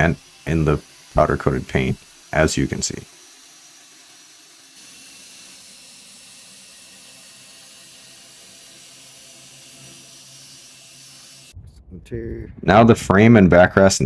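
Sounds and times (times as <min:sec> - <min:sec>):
faint hiss: 0:00.0 - 0:05.9
low hum: 0:11.5 - 0:14.0.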